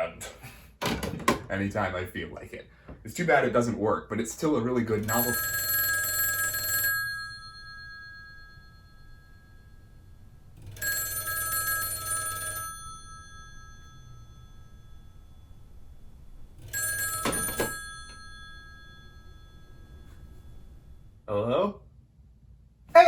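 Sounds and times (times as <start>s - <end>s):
telephone bell ringing: 4.9s - 21.2s.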